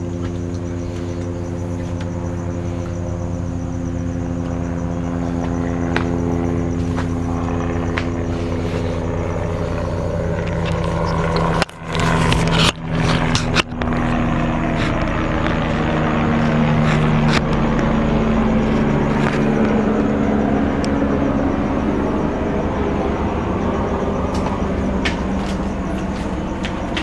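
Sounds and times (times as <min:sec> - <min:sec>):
car engine idling: 0:08.4 - 0:27.0.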